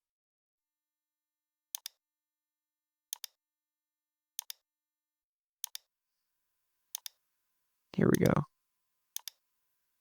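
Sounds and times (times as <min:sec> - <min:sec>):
computer mouse clicking: 0:01.8 - 0:02.0, 0:04.4 - 0:04.6, 0:07.0 - 0:07.2, 0:09.2 - 0:09.4.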